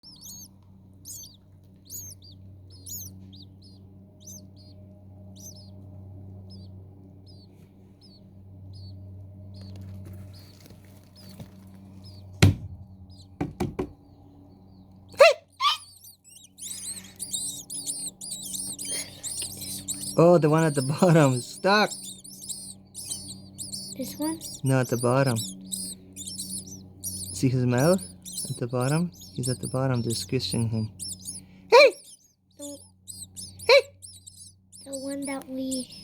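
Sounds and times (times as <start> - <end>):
nestlings begging cheeps: 0.0 - 12.4, 13.0 - 13.4, 14.4 - 36.0
low steady hum: 0.0 - 36.0
sharp knocks: 12.4 - 12.8, 13.4 - 14.0.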